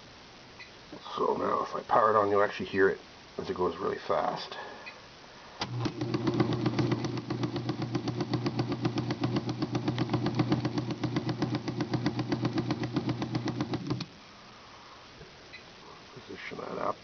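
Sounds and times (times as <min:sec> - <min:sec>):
rapid even thumping: 0:05.6 - 0:14.1
typewriter motor hum: 0:05.6 - 0:14.1.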